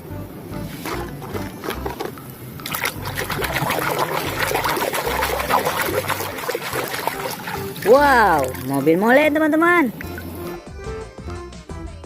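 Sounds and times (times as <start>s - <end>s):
water running and splashing: 1.6s - 10.4s.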